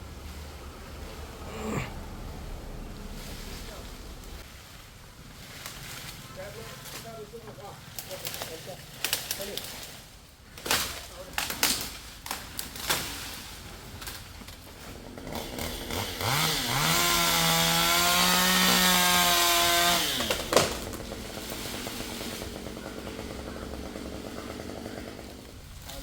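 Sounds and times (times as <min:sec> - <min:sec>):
chainsaw revving: 0:05.6 - 0:10.0, 0:11.4 - 0:26.0.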